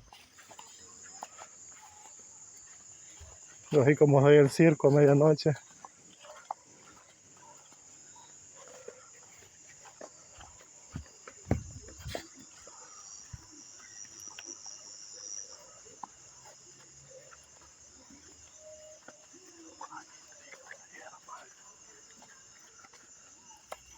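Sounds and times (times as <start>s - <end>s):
night insects trilling: 0.0s - 23.9s
knocks and thumps: 10.4s - 12.4s.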